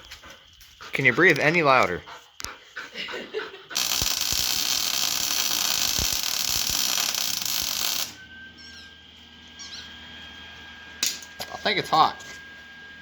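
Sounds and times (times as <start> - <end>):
welding arc hissing and popping: 3.8 - 8.2.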